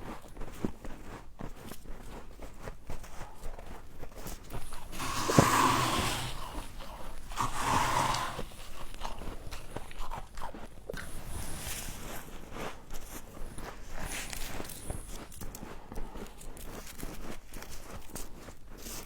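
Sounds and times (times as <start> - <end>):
crunching and chewing frost: 0.0 - 19.0.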